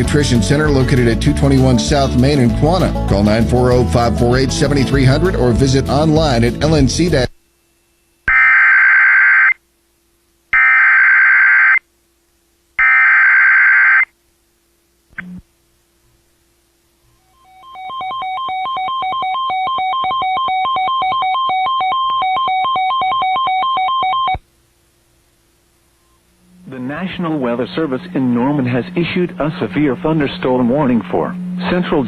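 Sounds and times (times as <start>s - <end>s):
warbling two-tone attention signal: 17.3s - 24.4s.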